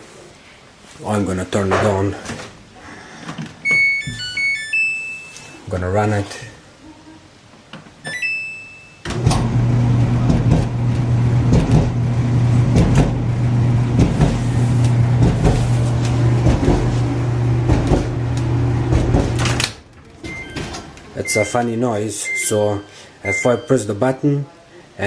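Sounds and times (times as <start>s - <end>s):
control panel beep: 3.6s - 5.5s, 8.0s - 9.0s, 20.3s - 20.6s, 21.2s - 23.8s
dryer motor and drum hum: 9.1s - 21.4s
thumps and knocks: 10.2s - 10.8s, 11.5s - 12.0s, 12.7s - 13.2s, 14.0s - 14.5s, 15.2s - 18.2s, 18.9s - 19.6s.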